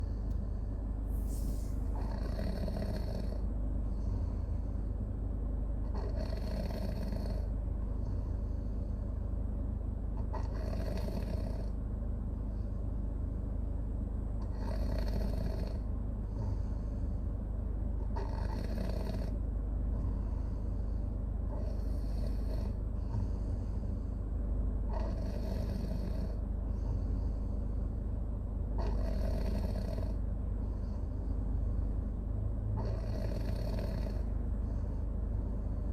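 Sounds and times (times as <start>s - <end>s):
baby snoring: 1.9s - 3.4s, 5.9s - 7.5s, 10.3s - 11.7s, 14.4s - 15.8s, 18.1s - 19.4s, 21.5s - 23.4s, 24.9s - 27.2s, 28.8s - 30.2s, 32.8s - 35.0s.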